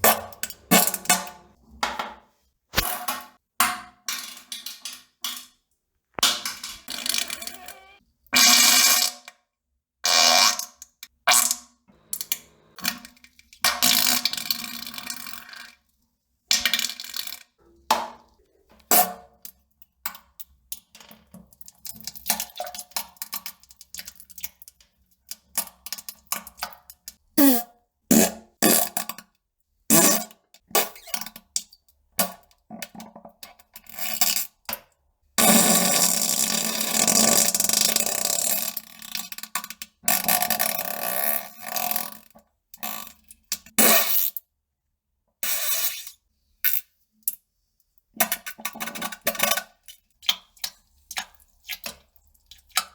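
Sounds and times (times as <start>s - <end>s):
fart sounds: 27.4s - 28.9s.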